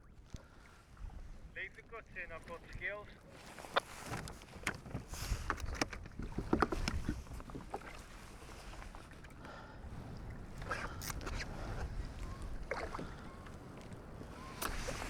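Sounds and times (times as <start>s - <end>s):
water slapping against kayak hull: 2.7s - 15.0s
knocks and clicks on boat: 3.4s - 15.0s.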